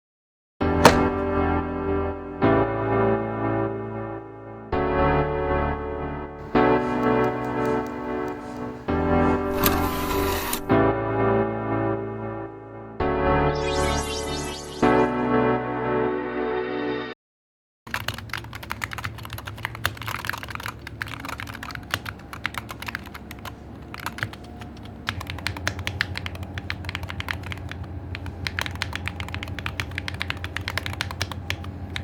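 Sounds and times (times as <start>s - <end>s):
mechanical keyboard typing: 0.8s - 1.3s, 6.4s - 10.4s, 17.9s - 32.0s.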